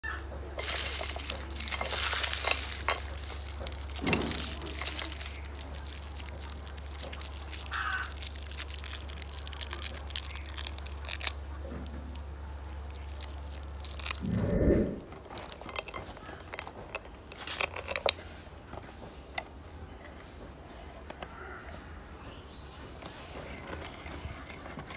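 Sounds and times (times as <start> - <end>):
candy crunching and crackling: 0.5 - 14.5.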